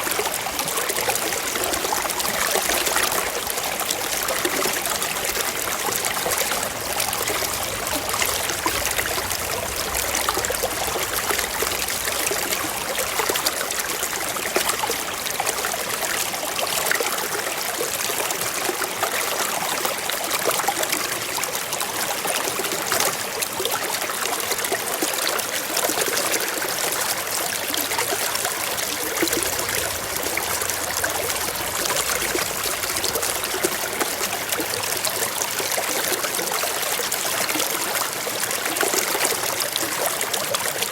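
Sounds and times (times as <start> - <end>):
waterfall rushing and splashing: 0.0 - 40.9.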